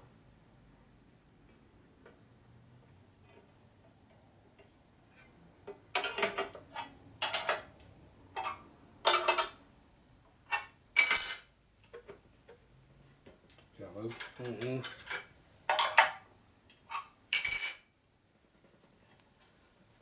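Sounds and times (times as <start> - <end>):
metallic clanks and clinks: 10.5 - 11.6, 14.0 - 16.2, 16.9 - 18.0.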